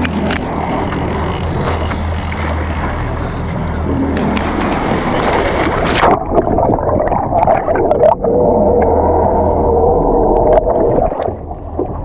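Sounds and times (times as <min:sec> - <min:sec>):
boat engines running: 0:00.0 - 0:06.0
rushing water: 0:00.0 - 0:12.0.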